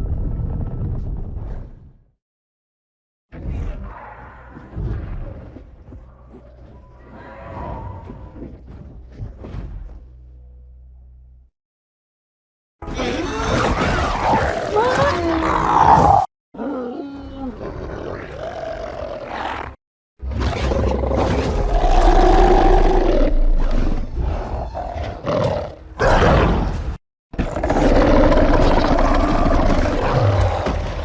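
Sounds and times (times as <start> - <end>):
monster creature calls: 12.8 - 16.7.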